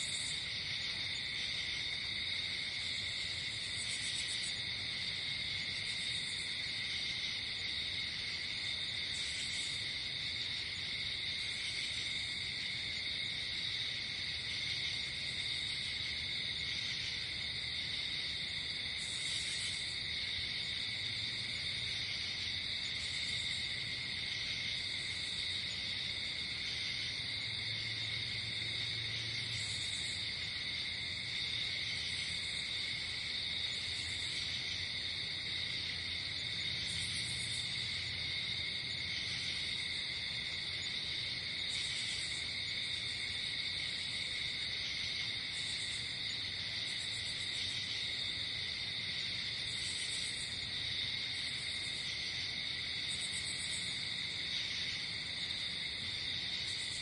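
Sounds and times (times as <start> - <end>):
crickets trilling: 0.0 - 57.0
high insect calls: 0.0 - 57.0.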